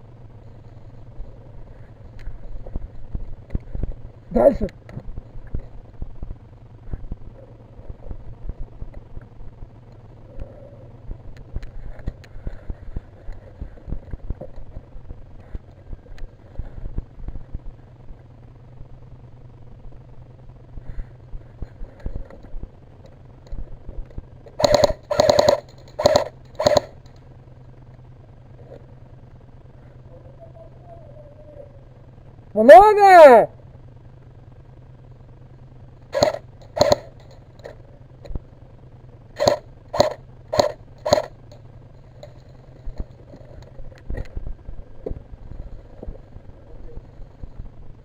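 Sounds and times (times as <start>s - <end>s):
airsoft gun automatic bursts: 24.6s - 27.2s, 36.1s - 37.4s, 39.4s - 41.6s.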